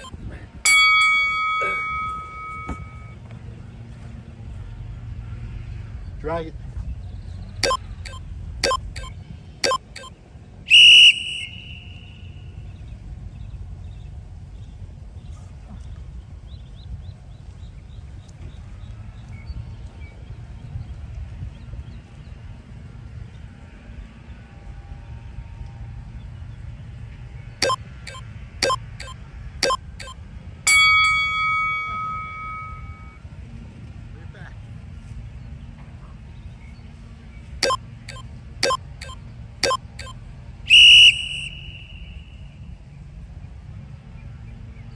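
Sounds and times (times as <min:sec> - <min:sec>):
high timer beep: 0:00.0 - 0:03.1, 0:07.6 - 0:10.1, 0:27.6 - 0:33.2, 0:37.6 - 0:40.2
long ringing tone: 0:00.7 - 0:03.2, 0:30.7 - 0:33.2
timer click: 0:07.6 - 0:10.1, 0:27.6 - 0:31.2, 0:37.6 - 0:40.1.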